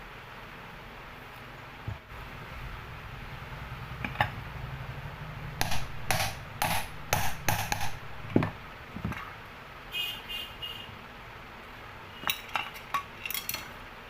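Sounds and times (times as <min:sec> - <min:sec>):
sharp knocks on fan parts: 0:05.6 - 0:09.3.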